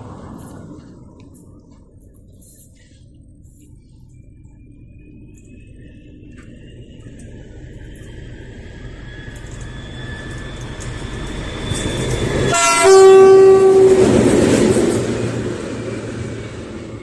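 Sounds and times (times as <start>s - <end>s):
train passing at speed: 0.0s - 17.0s
train horn: 12.3s - 14.4s.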